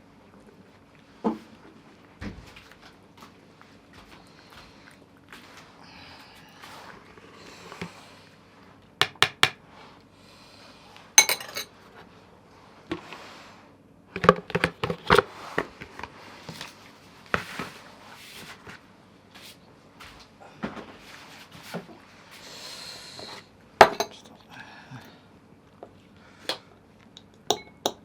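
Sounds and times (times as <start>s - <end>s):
dishes and utensils clattering: 11.2s - 11.7s, 23.8s - 24.3s, 27.5s - 28.0s.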